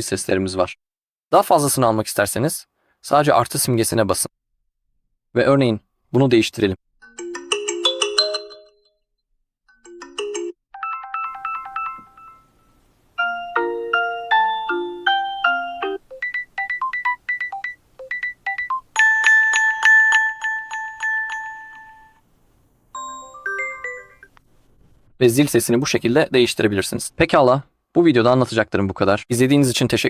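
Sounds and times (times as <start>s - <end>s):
chiming electronic ringtone melodies: 7.1s - 9.0s, 9.8s - 22.2s, 23.0s - 24.4s.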